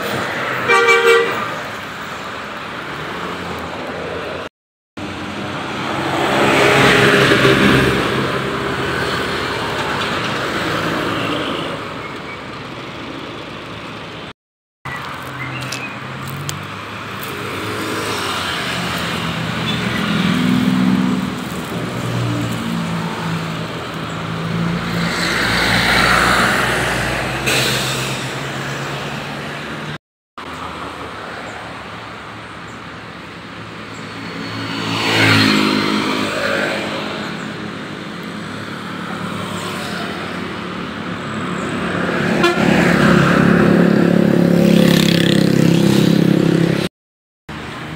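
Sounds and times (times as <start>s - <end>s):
bus engine: 0.0s - 46.9s
road noise: 0.0s - 46.9s, 47.5s - 47.9s
multi-tone air horn playing tune: 0.7s - 1.5s, 42.3s - 42.8s.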